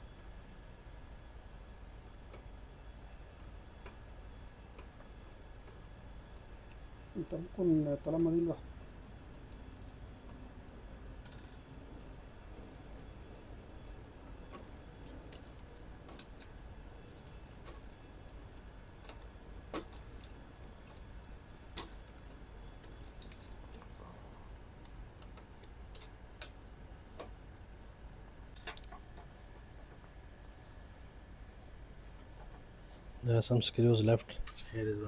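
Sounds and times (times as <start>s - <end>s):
faint steady hum: 0.0s - 35.0s
small clicks and taps of parts: 2.0s - 4.0s, 4.7s - 6.8s, 11.2s - 24.1s, 24.8s - 26.6s, 27.2s - 27.4s, 32.0s - 32.6s.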